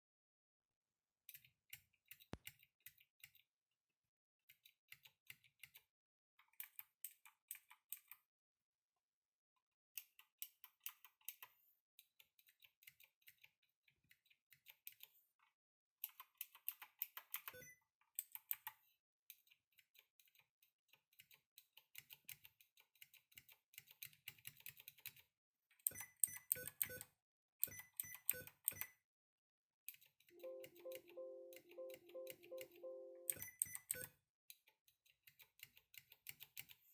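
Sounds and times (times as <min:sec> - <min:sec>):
typing on mechanical keyboard: 0:21.2 - 0:25.3.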